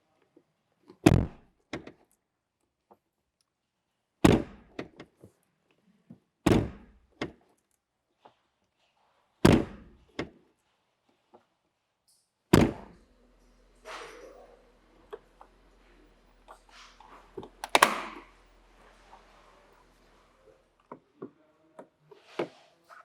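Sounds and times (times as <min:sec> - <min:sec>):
car door shutting with heavy thunk: 0:01.1 - 0:01.4, 0:04.3 - 0:04.7, 0:06.5 - 0:06.9, 0:09.5 - 0:10.0, 0:12.6 - 0:13.0
door latch clicks: 0:17.6 - 0:18.3.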